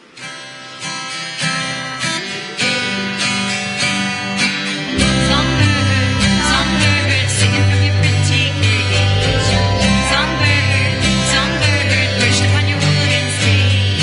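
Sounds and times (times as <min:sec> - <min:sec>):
acoustic guitar strumming chords: 0:00.3 - 0:14.0
bass line: 0:04.9 - 0:14.0.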